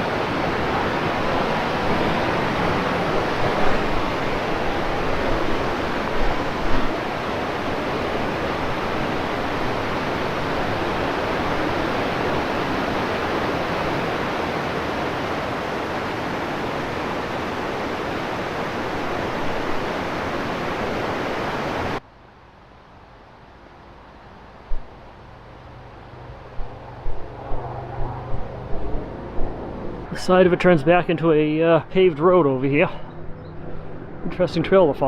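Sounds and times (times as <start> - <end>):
waterfall rushing water: 0.0 - 22.0.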